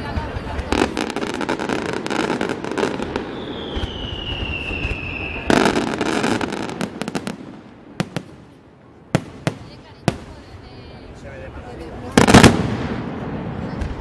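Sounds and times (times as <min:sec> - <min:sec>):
loud firework burst: 0:00.0 - 0:08.4, 0:12.1 - 0:14.0
fireworks crackling bangs: 0:00.0 - 0:14.0
firework whistle: 0:02.8 - 0:06.4.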